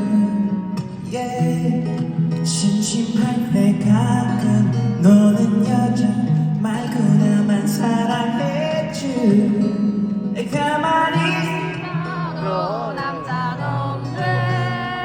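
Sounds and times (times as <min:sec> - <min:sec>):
person singing with vibrato: 0:10.4 - 0:15.0.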